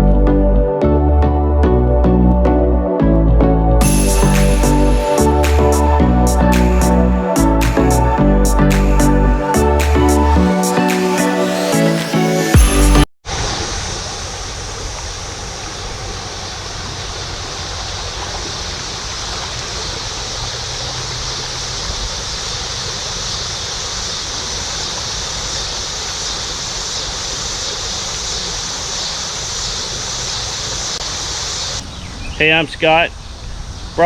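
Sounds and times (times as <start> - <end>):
music: 0.0 - 13.1
river water rushing: 8.7 - 31.8.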